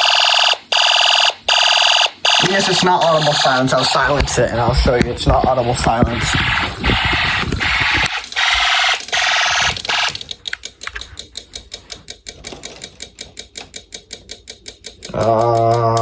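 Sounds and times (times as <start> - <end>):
fire alarm horn: 0.0 - 3.9
relay clicking rapidly: 0.0 - 16.0.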